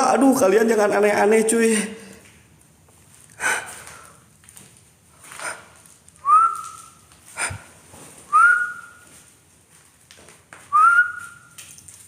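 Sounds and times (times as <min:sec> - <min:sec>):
rustling: 0:02.8 - 0:12.0.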